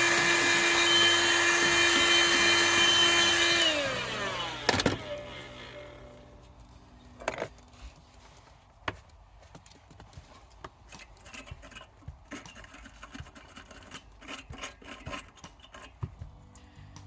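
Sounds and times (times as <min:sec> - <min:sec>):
scraper clicking on metal: 0:10.9 - 0:16.0
brush scrubbing: 0:11.2 - 0:16.1.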